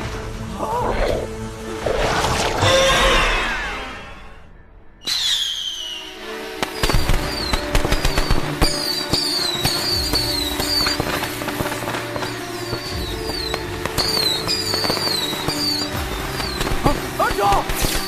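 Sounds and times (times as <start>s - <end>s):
fireworks whistling: 5.0s - 18.0s
fireworks crackling bangs: 6.4s - 18.0s.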